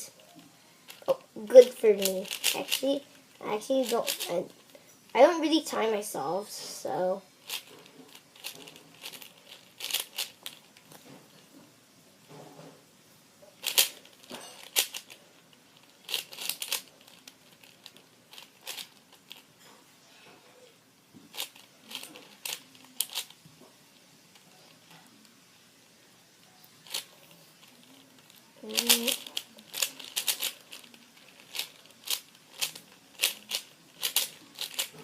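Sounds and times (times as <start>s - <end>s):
speed cube layers clicking: 1.6s - 3.0s, 3.8s - 4.3s, 14.7s - 15.1s, 16.1s - 17.7s, 28.6s - 35.0s.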